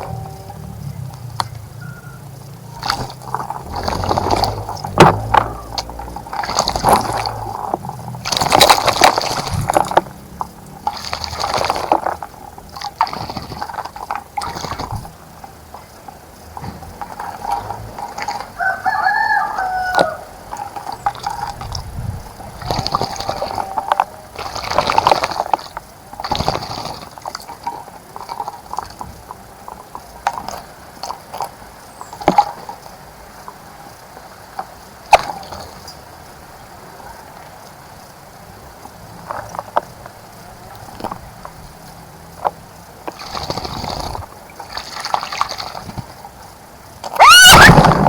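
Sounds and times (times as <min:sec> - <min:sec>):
bird splashing in water: 0:01.2 - 0:29.5, 0:43.0 - 0:46.4
rooster crowing: 0:01.8 - 0:02.9, 0:18.6 - 0:20.6, 0:22.8 - 0:24.4, 0:47.2 - 0:48.0.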